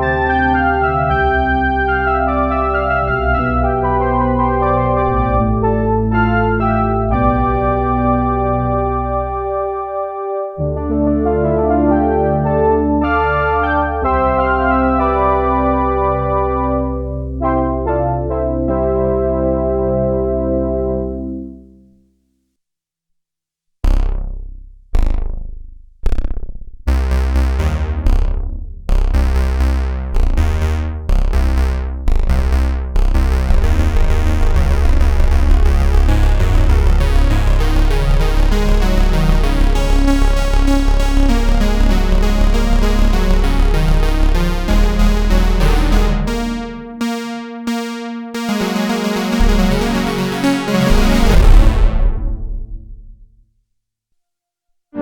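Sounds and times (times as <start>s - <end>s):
heavy bass line: 0.0s - 21.7s, 23.8s - 53.5s
synthesizer notes: 0.0s - 21.8s, 28.9s - 53.4s
fast synth pattern: 31.3s - 53.3s.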